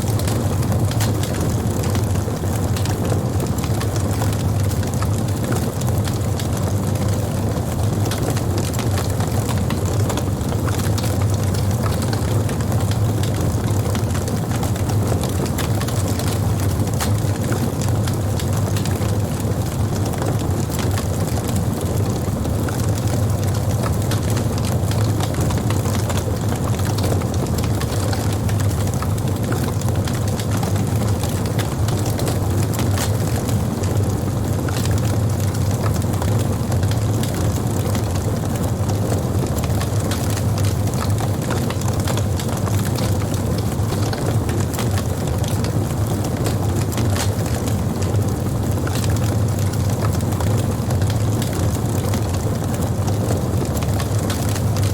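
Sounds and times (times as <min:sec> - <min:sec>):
campfire flame rumble: 0:00.0 - 0:54.9
fire crackling and popping: 0:00.0 - 0:54.9.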